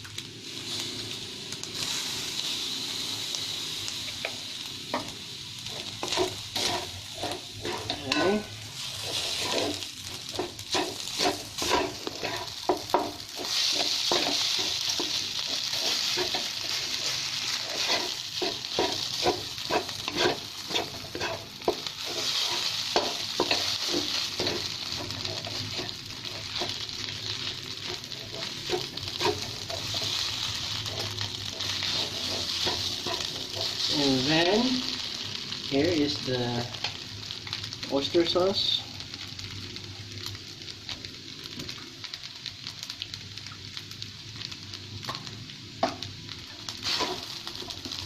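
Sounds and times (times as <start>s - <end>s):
rice sizzling in a pan: 0.0s - 48.0s
spatula scraping and clacking pan: 5.7s - 34.3s, 46.8s - 48.0s.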